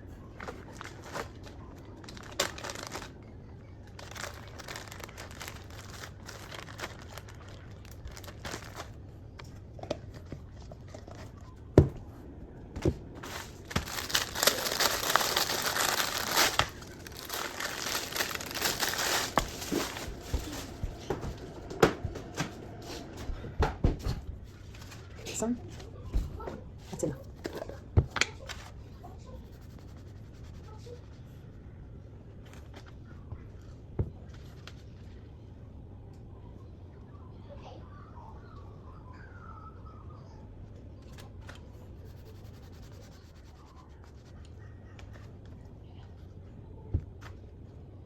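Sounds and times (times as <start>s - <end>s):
plastic packaging crinkling: 0.4s - 9.0s, 13.2s - 21.4s.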